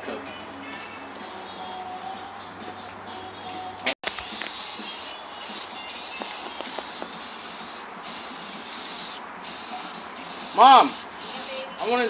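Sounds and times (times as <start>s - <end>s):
aerosol spray can hissing: 4.0s - 12.0s.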